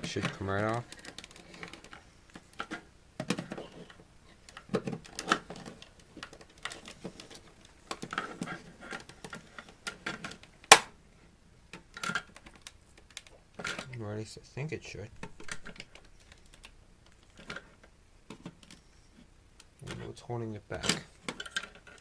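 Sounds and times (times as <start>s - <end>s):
plastic clicks and knocks: 0.0s - 10.9s.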